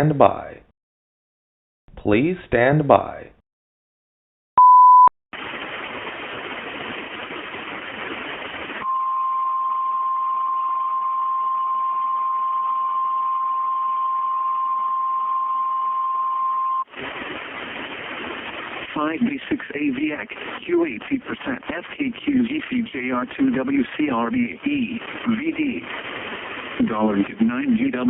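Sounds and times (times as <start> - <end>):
harsh static hiss: 5.4 - 8.8, 16.9 - 28.0.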